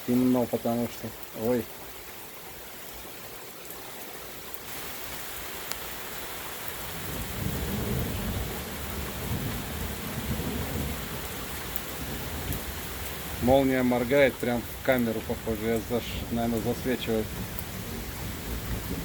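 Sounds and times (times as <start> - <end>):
heavy rain hissing: 0.0 - 19.0
low thunder rolling: 6.9 - 11.4, 12.0 - 19.0.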